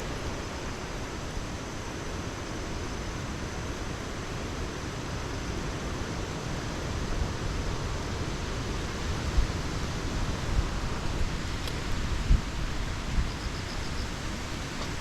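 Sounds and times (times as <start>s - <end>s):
wind and rain rushing: 0.0s - 15.0s
wind gusts buffeting microphone: 6.4s - 15.0s.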